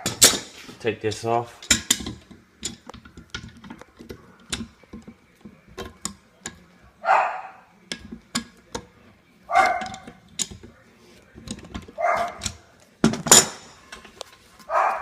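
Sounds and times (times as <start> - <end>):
plastic parts clicking and knocking: 1.6 - 6.7, 7.9 - 9.0, 9.6 - 14.4.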